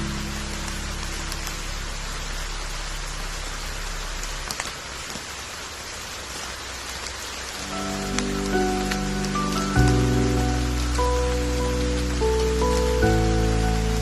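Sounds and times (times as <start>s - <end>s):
soft low music chords: 0.0s - 4.6s, 7.5s - 14.0s
steady rain falling: 0.0s - 14.0s.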